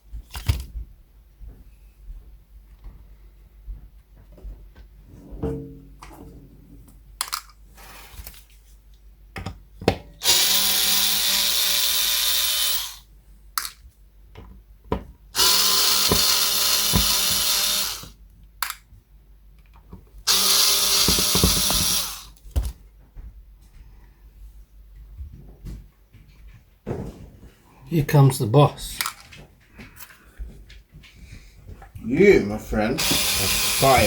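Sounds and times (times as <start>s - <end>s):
cordless drill whining: 10.2s - 13.0s, 15.4s - 18.2s, 20.3s - 22.4s, 33.0s - 34.0s.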